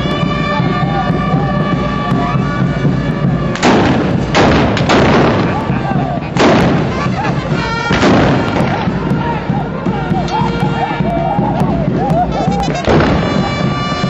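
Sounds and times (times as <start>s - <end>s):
rifle shots: 3.6s - 5.8s, 6.4s - 7.2s, 7.9s - 8.9s.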